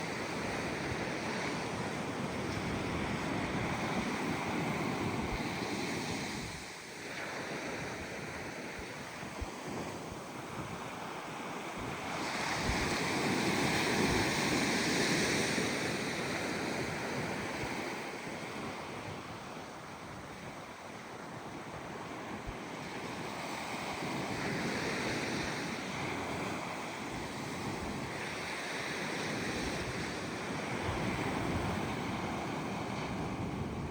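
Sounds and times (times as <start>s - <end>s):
wind buffeting microphone: 7.7s - 33.9s.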